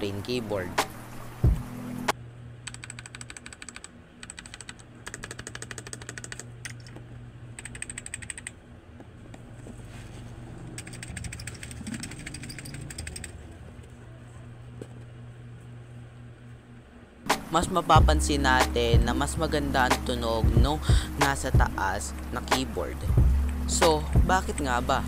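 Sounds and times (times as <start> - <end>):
fast typing on keyboards: 2.7 - 6.9, 7.6 - 8.5, 10.8 - 13.4.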